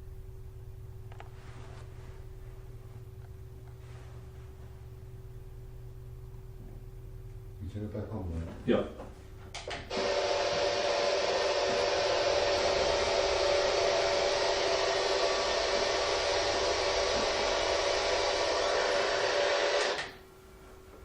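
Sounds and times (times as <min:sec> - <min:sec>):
static hiss: 0:09.9 - 0:20.2.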